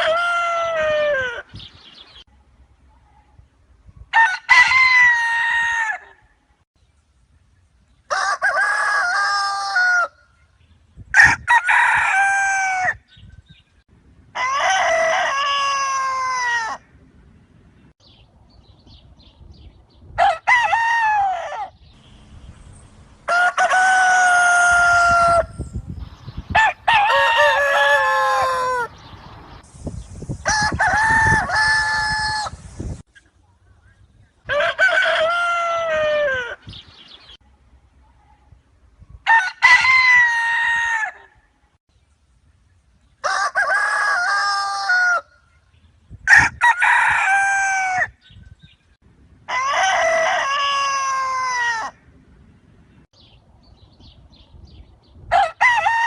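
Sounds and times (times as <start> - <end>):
rooster crowing: 11.2 - 13.0, 23.3 - 25.6, 26.6 - 29.0, 43.2 - 45.4, 46.3 - 48.2, 49.5 - 52.0, 55.3 - 56.0.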